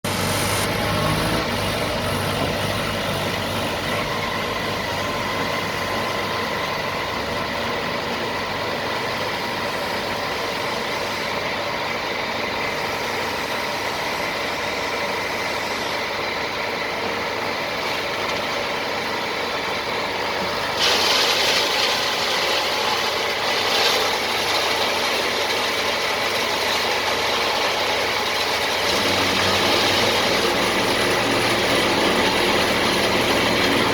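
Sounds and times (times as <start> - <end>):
hissing rush: 0.0 - 3.7
concrete mixer engine running: 0.0 - 33.9.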